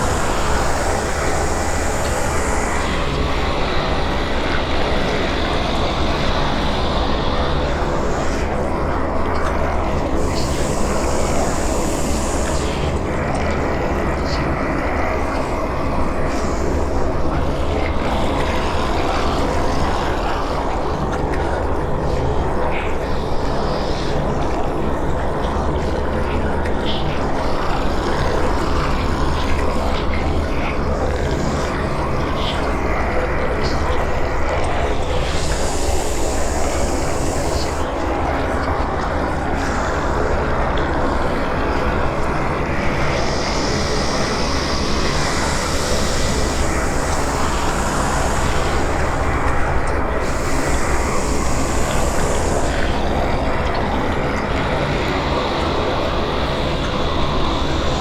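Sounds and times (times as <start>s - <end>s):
low rumbling drone: 27.2s - 58.0s
hissing layer: 34.6s - 37.9s, 41.4s - 58.0s.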